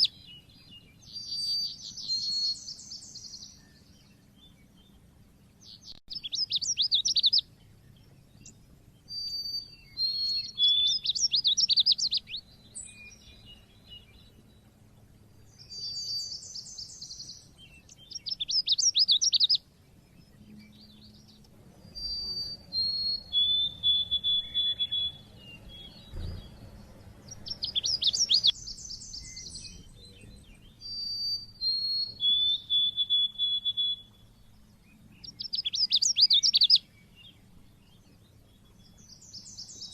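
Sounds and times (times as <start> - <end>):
bird twittering trills: 0.0 - 39.9
bird whistled notes: 9.1 - 14.0, 15.6 - 19.6, 20.5 - 34.4, 35.2 - 36.9.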